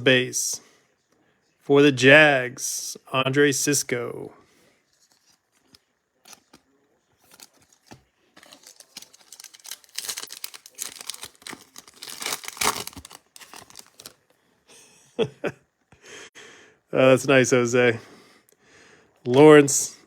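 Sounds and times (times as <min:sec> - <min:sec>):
foil wrapper tearing and crinkling: 0:07.2 - 0:14.2.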